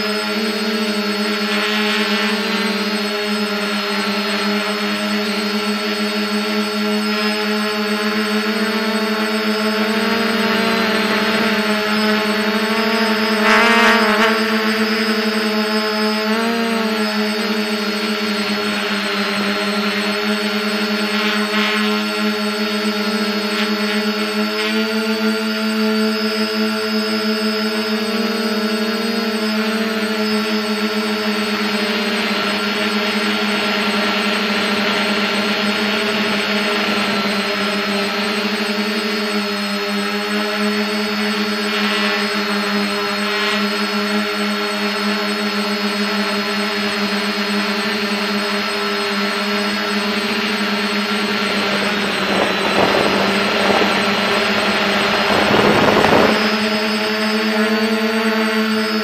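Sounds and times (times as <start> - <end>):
drone motors whining: 0.0 - 59.0
rushing noise: 50.2 - 57.2
whoosh of air: 50.9 - 57.2.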